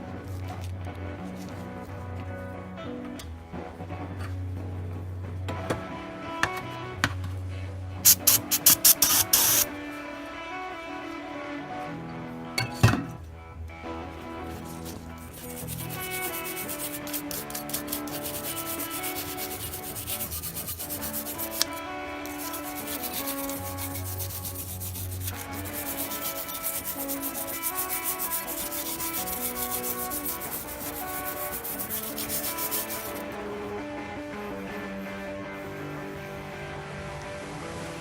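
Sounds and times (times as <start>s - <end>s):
background music: 0.0s - 38.0s
hand rubbing engine part: 8.1s - 9.7s, 14.6s - 33.4s.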